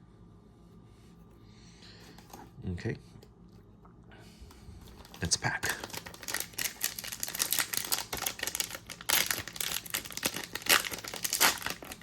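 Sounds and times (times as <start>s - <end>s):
wrapper tearing and crinkling: 4.9s - 12.0s.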